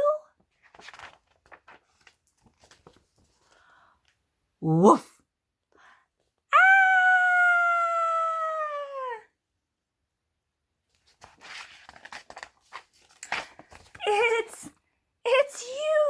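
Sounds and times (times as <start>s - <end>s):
person imitating a howl: 6.5s - 9.3s.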